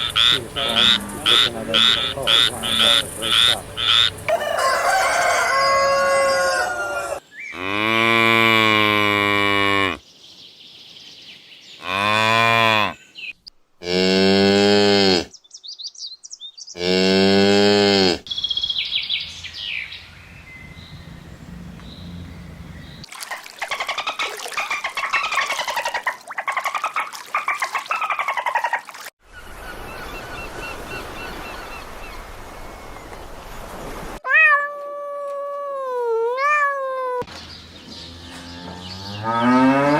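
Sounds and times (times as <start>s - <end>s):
cows mooing: 0.0s - 4.2s, 38.3s - 39.9s.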